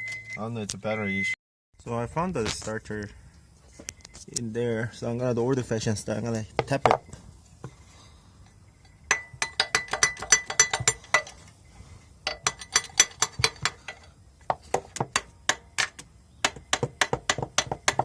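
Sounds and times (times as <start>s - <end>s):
metal tool tapping on metal: 8.4s - 11.4s, 12.2s - 18.0s.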